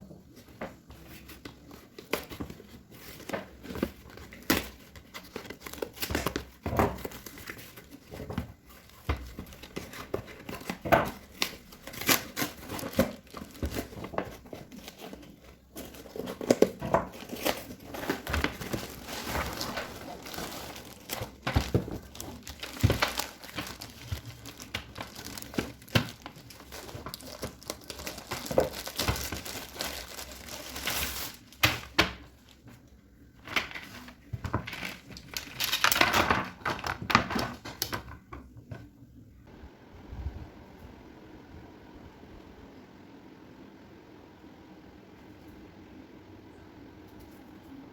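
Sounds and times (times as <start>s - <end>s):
packaging crinkling and tearing: 1.6s - 32.8s, 33.4s - 38.1s.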